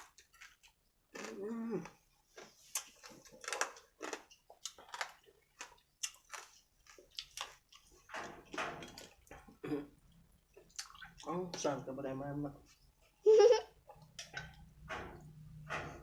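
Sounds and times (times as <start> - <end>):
food crunching: 0.0 - 8.1, 8.9 - 11.3
wet chewing: 0.0 - 8.1, 9.0 - 11.3
lip smacks: 10.6 - 11.3.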